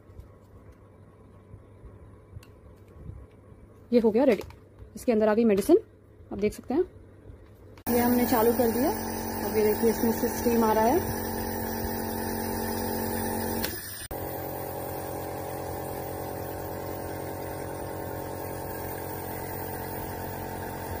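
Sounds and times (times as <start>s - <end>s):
nebulizer motor humming: 7.9s - 21.0s.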